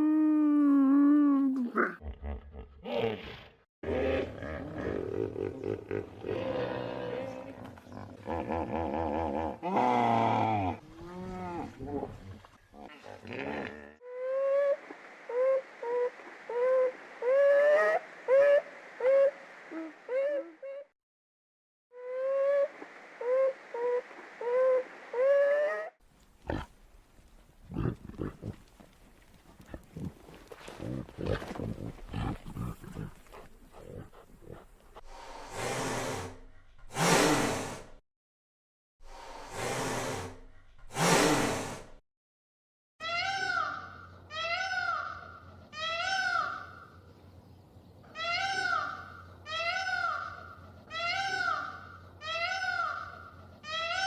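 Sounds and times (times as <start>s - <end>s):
low rough animal grunts: 27.6s - 28.8s, 29.5s - 37.8s.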